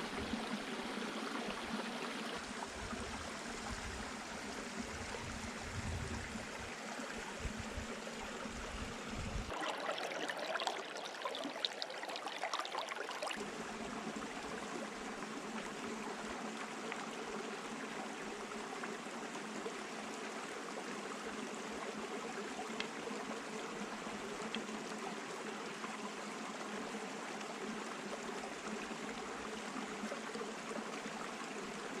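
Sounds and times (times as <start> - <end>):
stream flowing: 0.0 - 32.0
wind rumbling on microphone: 4.8 - 6.7, 7.3 - 9.5
water splashing: 9.5 - 13.4.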